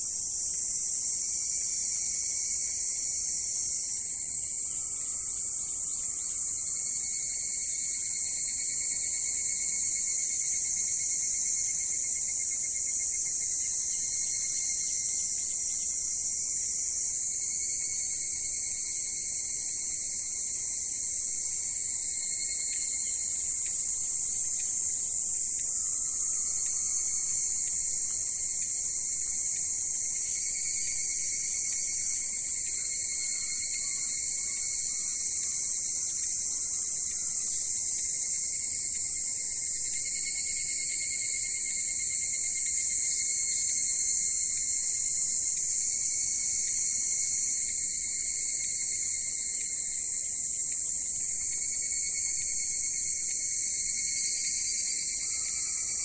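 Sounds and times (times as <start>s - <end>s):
lower pulsing insect trill: 0.0s - 56.0s
insects high shrill chorus: 25.5s - 28.0s, 30.2s - 38.1s, 53.8s - 56.0s.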